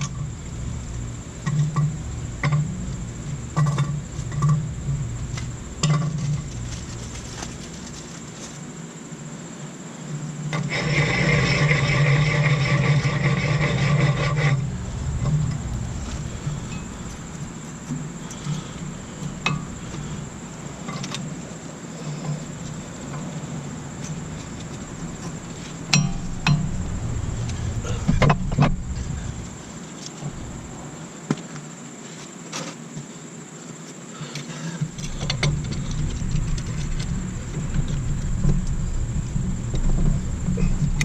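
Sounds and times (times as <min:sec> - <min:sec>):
steady low hum: 0:00.0 - 0:31.5, 0:34.8 - 0:41.0
metal tools clinking: 0:25.9 - 0:26.9.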